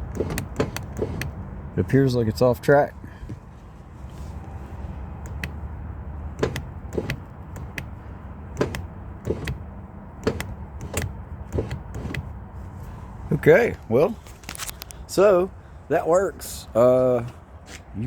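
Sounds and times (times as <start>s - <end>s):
power window motor hum: 0.0s - 1.4s, 6.3s - 7.9s, 8.5s - 9.6s, 10.2s - 12.3s
sharp clicks and knocks: 0.0s - 1.4s, 6.4s - 8.0s, 8.6s - 9.6s, 10.2s - 12.3s.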